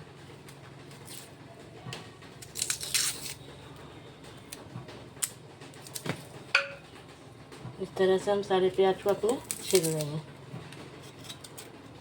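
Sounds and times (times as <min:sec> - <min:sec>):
onion skin peeling and crackling: 0:00.4 - 0:01.4, 0:02.4 - 0:03.5, 0:04.4 - 0:06.4, 0:09.0 - 0:10.3, 0:11.0 - 0:11.8.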